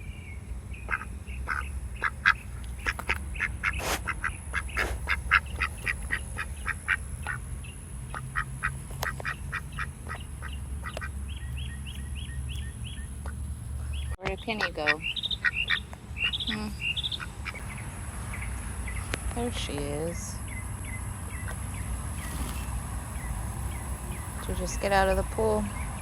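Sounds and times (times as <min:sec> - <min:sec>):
ducks quacking: 0:00.8 - 0:07.5, 0:08.1 - 0:11.3, 0:14.2 - 0:17.8.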